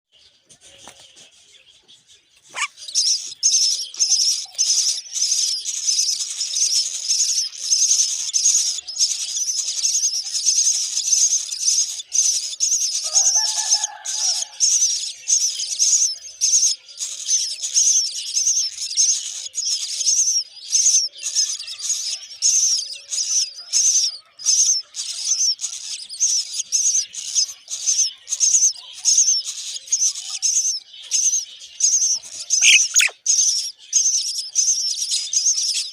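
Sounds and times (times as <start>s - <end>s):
nestlings begging chirps: 0.7s - 35.9s
low bird call: 2.5s - 4.5s, 32.6s - 33.2s.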